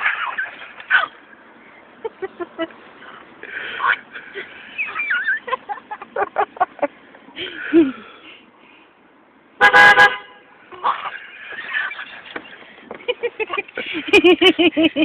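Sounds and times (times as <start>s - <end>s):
bursts of laughter: 3.6s - 8.0s, 10.7s - 15.0s
car horn beep: 9.6s - 10.6s.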